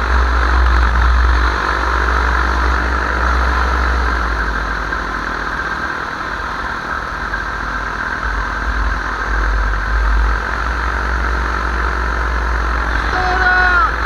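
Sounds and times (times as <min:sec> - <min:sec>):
paramotor engine running: 0:00.0 - 0:14.0
heavy low rumble: 0:12.4 - 0:14.0.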